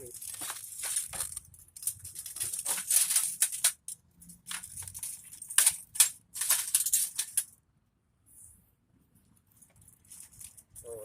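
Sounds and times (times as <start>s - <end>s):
computer scrap crunching and rattling: 0.0s - 7.5s.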